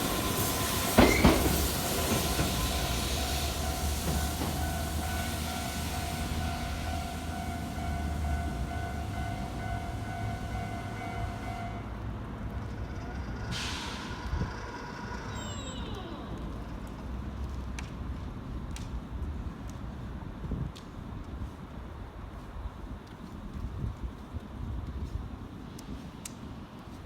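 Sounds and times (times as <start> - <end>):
train wheels clacking over rail joints: 0.0 - 5.8
train rumble: 0.0 - 27.0.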